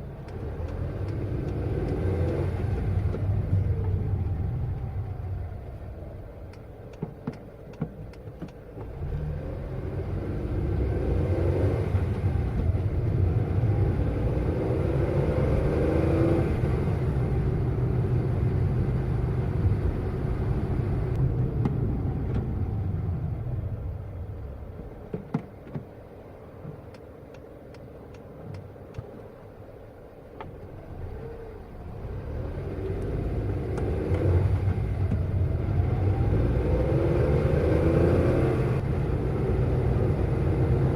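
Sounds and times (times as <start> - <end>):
car engine revving: 8.8 - 22.8, 32.0 - 40.9.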